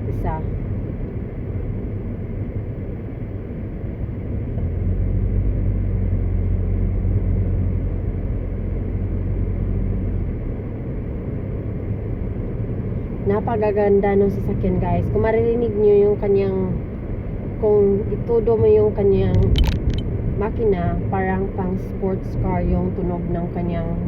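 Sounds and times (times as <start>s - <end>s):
car engine accelerating: 0.0s - 16.1s
road noise: 0.0s - 24.0s.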